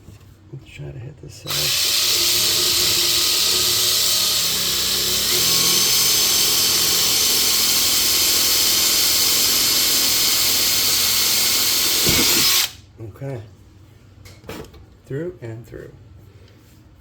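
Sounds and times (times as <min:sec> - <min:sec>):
power drill boring into wood: 0:01.5 - 0:12.8.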